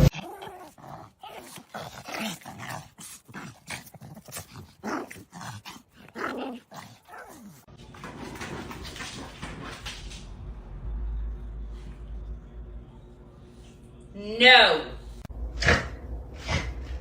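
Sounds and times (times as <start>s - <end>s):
dog whining and grumbling: 0.0s - 7.7s.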